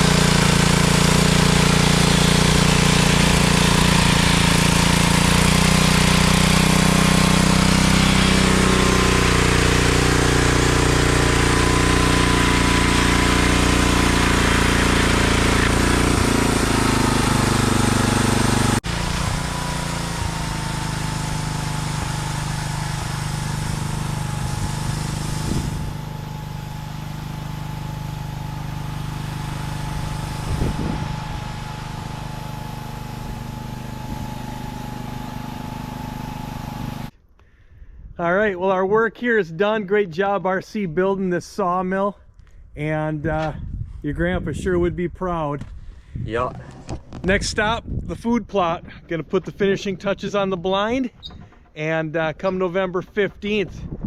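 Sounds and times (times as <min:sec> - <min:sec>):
gasoline engine running: 0:00.0 - 0:37.1, 0:45.8 - 0:54.0
saw cutting wood hiss: 0:00.0 - 0:37.1.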